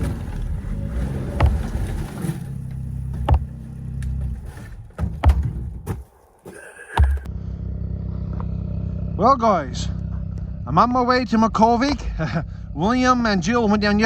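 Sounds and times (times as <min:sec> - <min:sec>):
snowmobile engine running: 0:00.0 - 0:04.7, 0:07.0 - 0:14.0
sharp knocks over bumps: 0:00.0 - 0:07.3.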